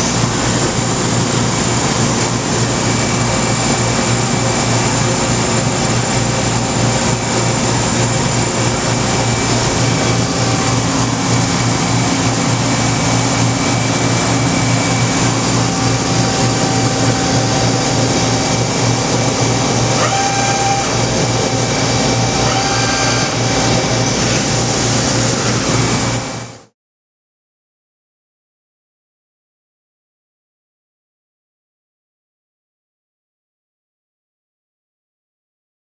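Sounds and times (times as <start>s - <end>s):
machine hum with high whines: 0.0s - 26.7s.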